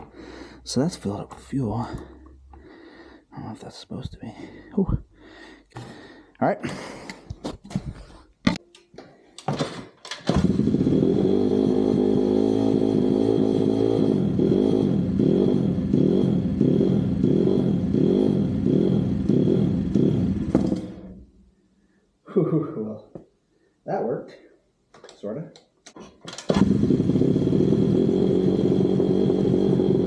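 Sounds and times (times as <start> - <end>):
pit bike engine running: 10.3 - 21.1, 26.5 - 30.0.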